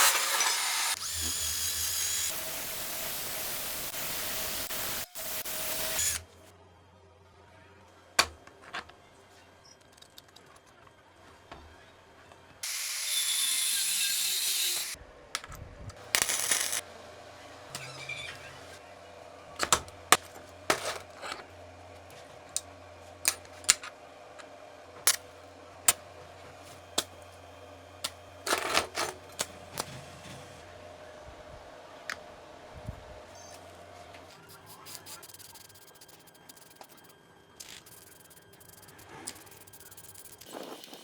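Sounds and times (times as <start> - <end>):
tools and metal parts clicking: 15.4 - 16.8, 23.2 - 23.9, 25.1 - 25.3, 28.0 - 29.9, 34.6 - 41.0.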